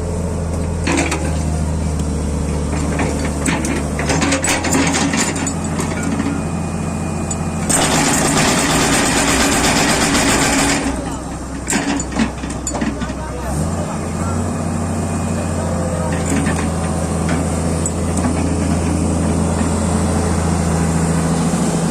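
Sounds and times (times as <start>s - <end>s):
excavator diesel engine running: 0.0s - 21.9s
metallic knocks and clanks: 2.7s - 6.4s, 11.6s - 13.3s.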